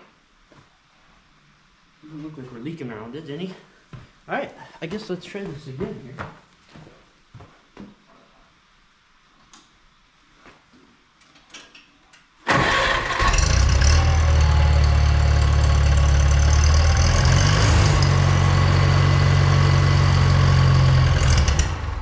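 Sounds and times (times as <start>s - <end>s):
engine cranking on starter: 12.5s - 22.0s.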